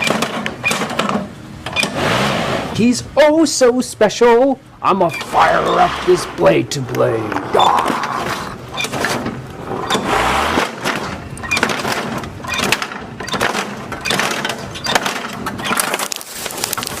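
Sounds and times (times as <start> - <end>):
toy cracking and clattering: 13.4 - 17.0.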